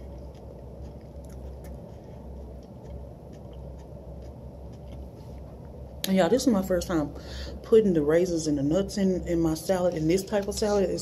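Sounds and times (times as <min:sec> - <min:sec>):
soft chewing clicks: 0:00.0 - 0:06.2
steady low hum: 0:00.0 - 0:11.0.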